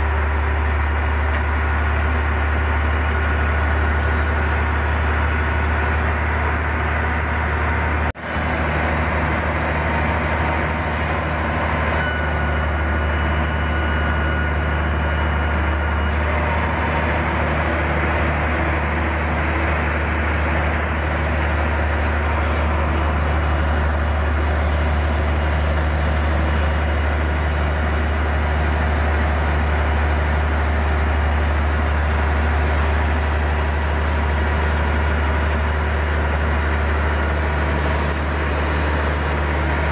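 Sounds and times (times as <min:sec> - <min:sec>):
heavy diesel engine hum: 0:00.0 - 0:39.9.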